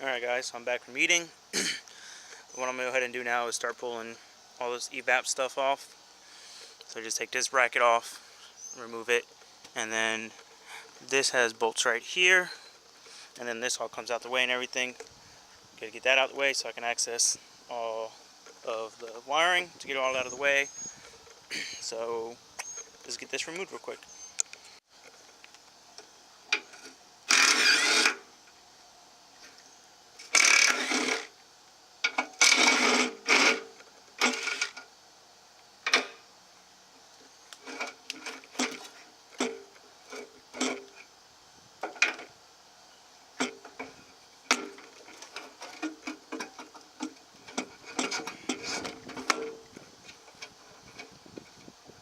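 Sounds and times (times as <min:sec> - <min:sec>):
rapid ratcheting: 0:27.3 - 0:28.2, 0:30.2 - 0:31.4, 0:32.2 - 0:34.8.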